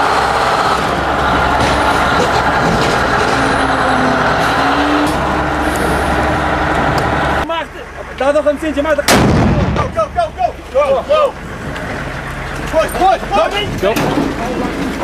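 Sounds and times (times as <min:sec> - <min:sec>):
motor running loudly: 0:00.0 - 0:07.5.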